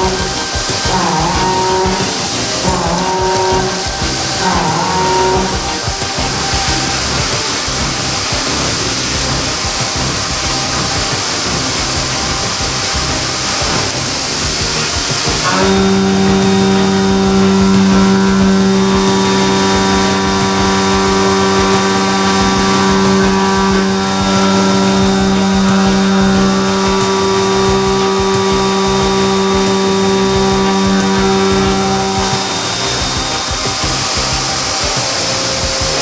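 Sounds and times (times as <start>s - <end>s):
constant hiss: 0.0s - 36.0s
milling machine hum: 0.0s - 36.0s.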